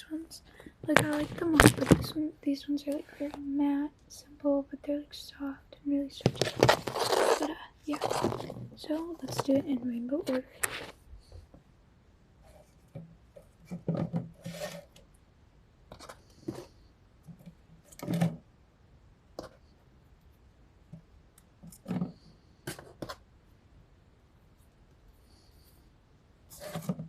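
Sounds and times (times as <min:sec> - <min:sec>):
fidget toys rubbing and knocking: 0:00.8 - 0:02.2, 0:06.2 - 0:11.0.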